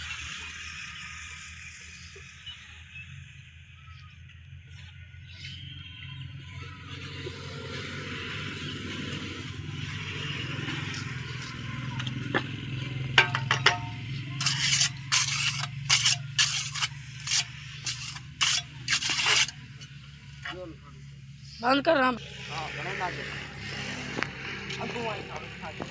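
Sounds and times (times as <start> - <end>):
rough scraping strokes: 13.2 - 19.6.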